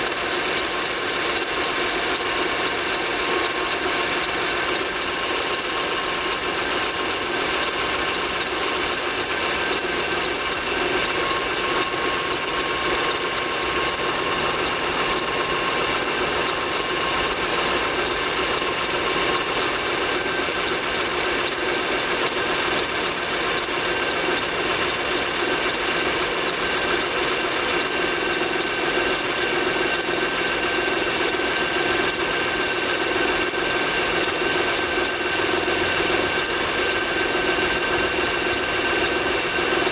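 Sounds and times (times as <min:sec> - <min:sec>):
car engine knocking: 0:00.0 - 0:39.9.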